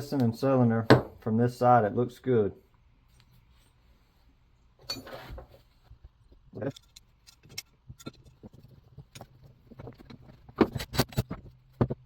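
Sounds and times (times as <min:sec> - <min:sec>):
tools and parts clicking: 0:06.6 - 0:11.5.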